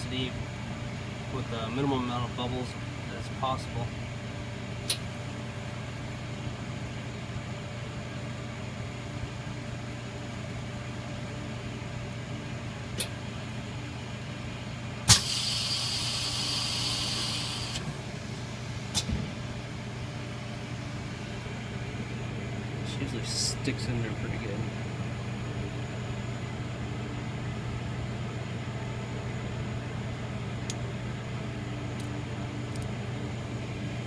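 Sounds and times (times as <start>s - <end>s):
laminating machine humming: 0.0s - 34.0s
air hissing from vent: 15.0s - 19.4s.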